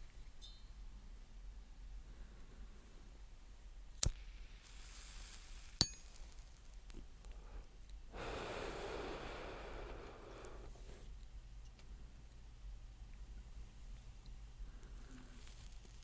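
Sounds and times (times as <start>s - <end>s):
lighter flame hiss: 3.9s - 11.3s, 14.7s - 16.0s
metallic clink with ring: 5.8s - 6.2s
breathy pull of smoke: 7.4s - 11.1s.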